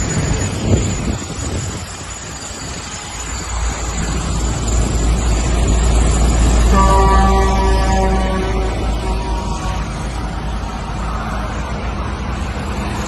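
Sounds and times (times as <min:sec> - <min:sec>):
street traffic: 0:00.0 - 0:13.0
low engine rumble: 0:03.6 - 0:13.0.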